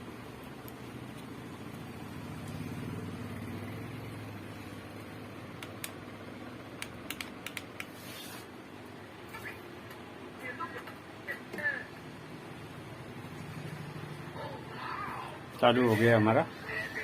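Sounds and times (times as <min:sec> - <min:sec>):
sharp clicks: 0:05.6 - 0:06.0, 0:06.8 - 0:08.0.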